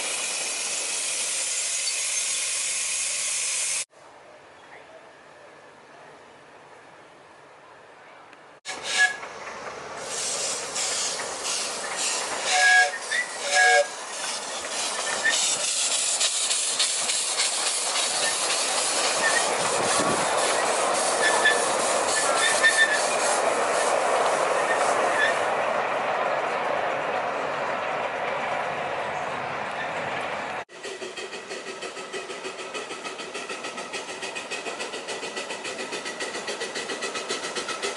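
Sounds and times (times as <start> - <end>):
steam hissing: 0.0 - 3.9, 9.9 - 25.5, 30.7 - 37.9
steam whistle toots: 8.7 - 9.3, 12.4 - 14.0, 19.2 - 23.3
steam locomotive exhaust chuffs: 8.7 - 28.8, 30.0 - 37.9.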